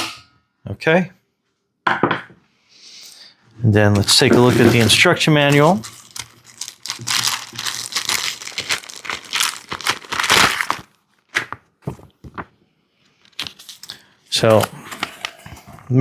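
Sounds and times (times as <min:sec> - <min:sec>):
paper and plastic packaging crinkling: 0:04.1 - 0:15.9.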